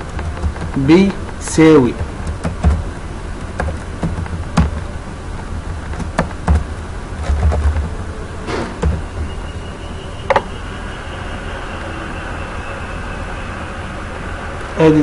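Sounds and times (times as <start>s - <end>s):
low hum: 0.0s - 15.0s
computer keyboard keystrokes: 2.0s - 2.8s, 3.4s - 4.8s, 5.9s - 8.0s.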